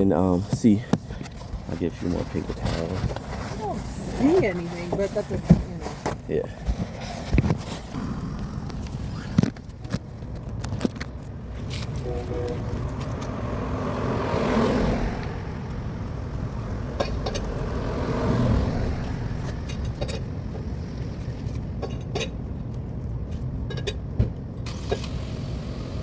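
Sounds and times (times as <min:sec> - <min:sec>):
low rumble of traffic: 0:00.0 - 0:26.0
vehicle passing: 0:07.9 - 0:23.7.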